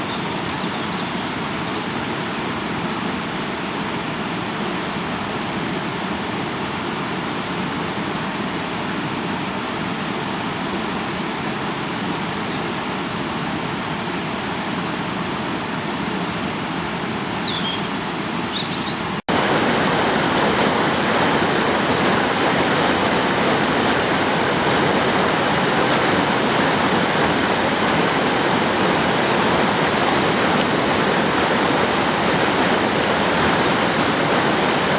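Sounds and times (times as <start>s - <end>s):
rushing stream water: 0.0s - 34.9s.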